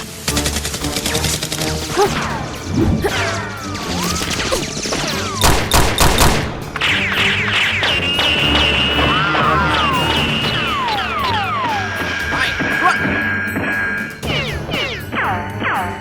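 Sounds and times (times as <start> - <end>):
background music: 0.0 - 16.0
gunshots: 0.2 - 11.8.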